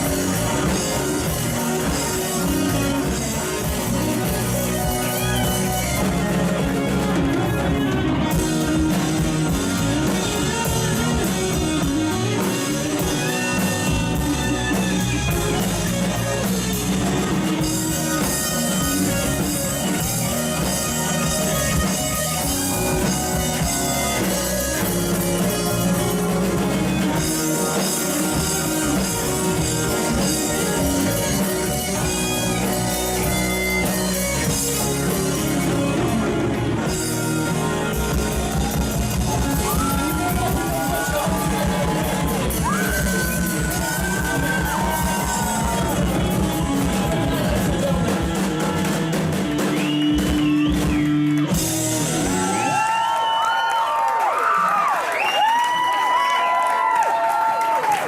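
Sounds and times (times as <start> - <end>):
electric guitar: 0.0 - 58.0
live rock band: 0.0 - 58.0.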